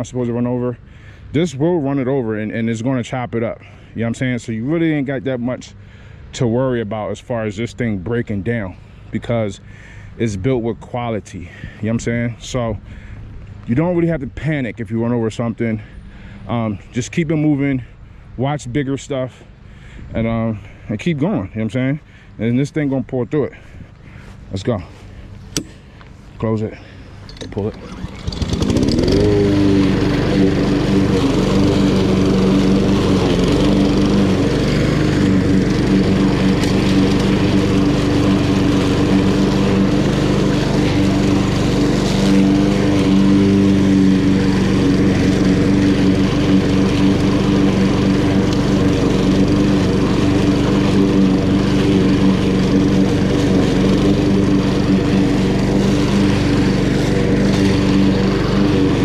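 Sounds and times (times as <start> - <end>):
lawn mower engine running: 8.2 - 10.2, 23.6 - 59.0.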